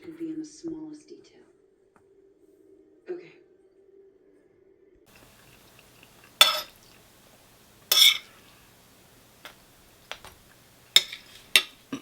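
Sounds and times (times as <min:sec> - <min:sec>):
cutlery clinking on a plate: 0:05.1 - 0:12.0
cutlery scrape: 0:05.1 - 0:12.0.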